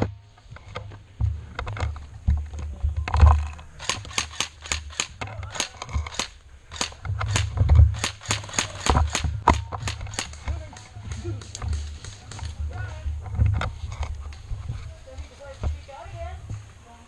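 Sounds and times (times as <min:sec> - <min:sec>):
airsoft gun rapid firing: 0:03.8 - 0:10.4.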